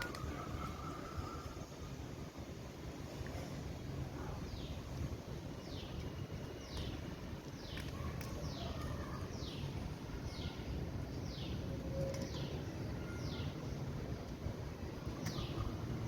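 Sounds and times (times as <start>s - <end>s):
bird chirping: 15.0s - 15.8s.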